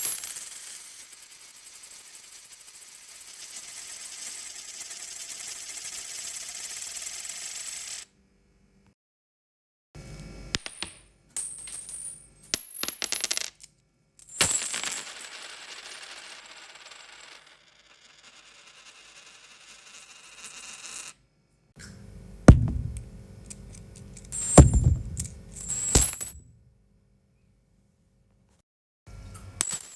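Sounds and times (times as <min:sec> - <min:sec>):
coins clinking on hard surface: 0:00.0 - 0:08.0, 0:10.5 - 0:21.2, 0:22.5 - 0:26.4, 0:29.6 - 0:29.9
heavy coin drops thudding: 0:10.5 - 0:17.5, 0:22.4 - 0:26.5, 0:29.6 - 0:29.9
coins clattering: 0:10.6 - 0:13.6, 0:14.2 - 0:17.5, 0:22.5 - 0:26.4.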